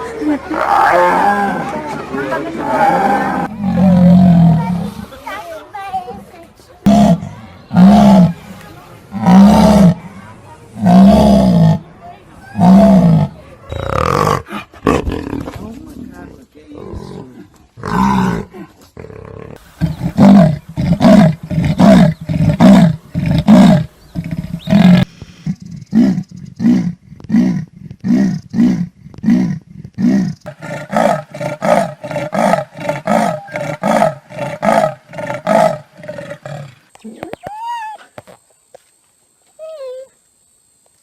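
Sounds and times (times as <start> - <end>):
big cat grunting roar: 2.6 - 5.0, 6.9 - 8.4.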